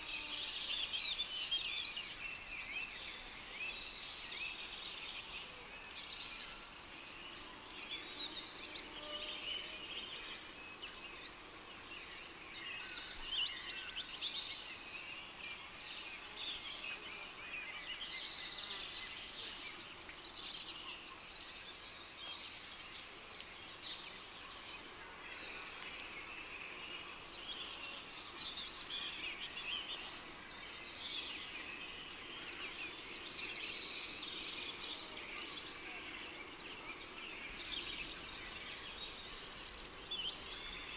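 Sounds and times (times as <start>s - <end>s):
insect and bird calls: 0.0s - 40.9s
cricket chirping: 26.2s - 40.9s.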